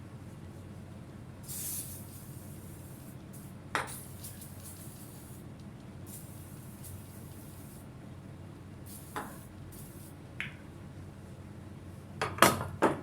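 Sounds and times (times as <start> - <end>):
steady low hum: 0.0 - 12.2
short hiss: 1.5 - 5.4.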